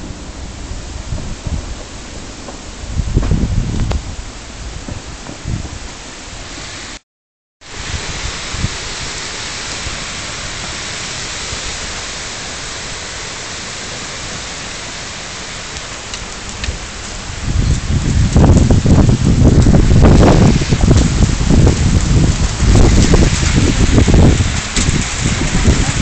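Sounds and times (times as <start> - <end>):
heavy hail and rain: 7.6 - 26.0.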